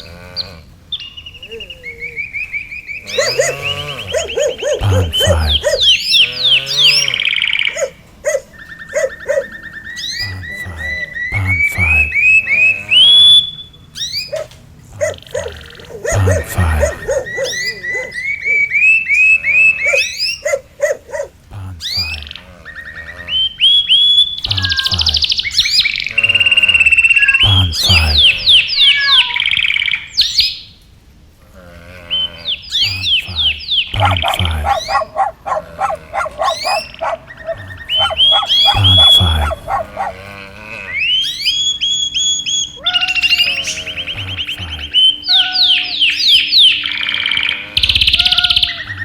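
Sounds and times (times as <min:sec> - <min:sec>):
pitched animal calls: 0:00.0 - 0:30.6, 0:31.4 - 0:49.0
bird chirping and whistling: 0:01.0 - 0:07.8, 0:08.5 - 0:10.3, 0:10.9 - 0:14.5, 0:17.0 - 0:20.4, 0:23.4 - 0:30.6, 0:32.7 - 0:40.1, 0:41.0 - 0:49.0.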